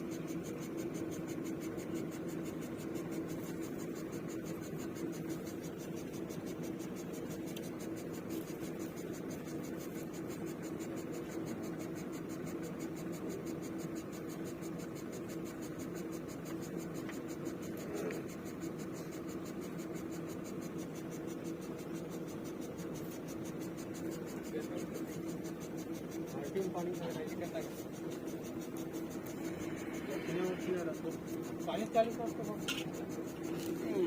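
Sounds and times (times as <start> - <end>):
fast even ticking: 0.0 - 34.0
machine hum: 0.0 - 34.0.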